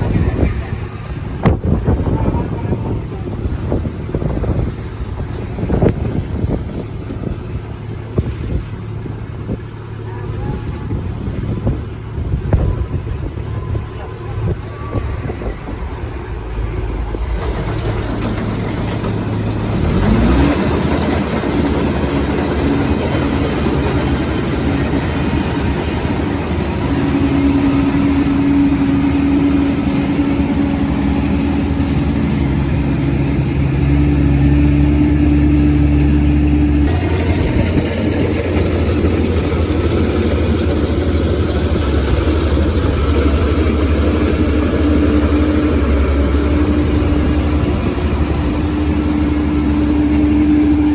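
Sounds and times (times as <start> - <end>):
combine harvester running: 0.0 - 50.9
machinery whine: 12.2 - 50.9.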